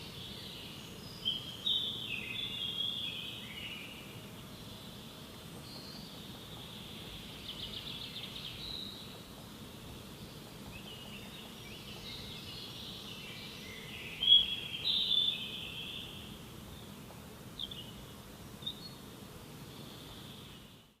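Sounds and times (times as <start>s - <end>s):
birds singing and calling: 0.0s - 21.0s
low background noise: 0.0s - 21.0s.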